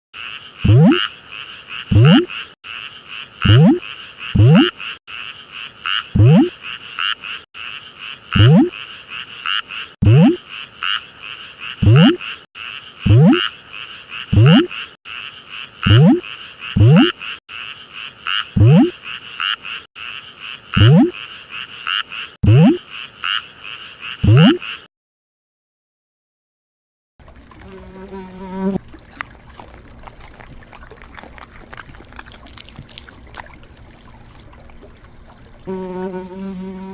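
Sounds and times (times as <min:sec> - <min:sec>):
chorus of pulsing frog calls: 0:00.2 - 0:24.9
low frog croaks: 0:00.2 - 0:24.9, 0:28.8 - 0:35.0.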